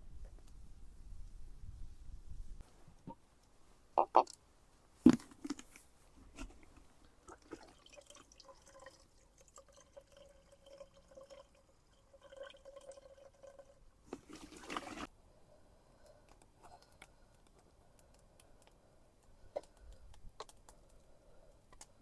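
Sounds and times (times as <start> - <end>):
liquid pouring into container: 7.2 - 15.1
splashing: 14.1 - 15.1.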